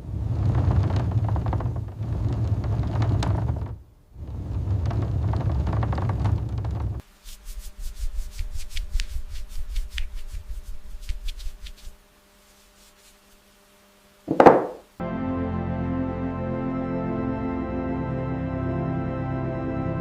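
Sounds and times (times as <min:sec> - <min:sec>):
rubbing and scraping: 0:00.0 - 0:13.6
background music: 0:15.0 - 0:20.0.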